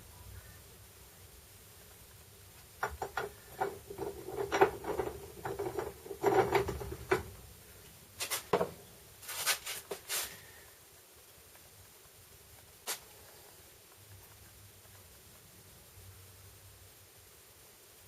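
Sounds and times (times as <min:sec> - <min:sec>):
faint steady hum: 0:00.0 - 0:18.0
irregular clicks and knocks: 0:02.6 - 0:07.4.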